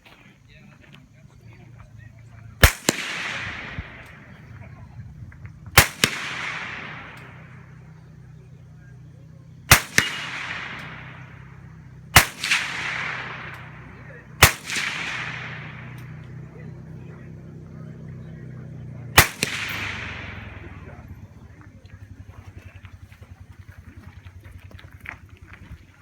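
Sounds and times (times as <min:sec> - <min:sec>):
rifle shots echoing: 0:02.5 - 0:22.4.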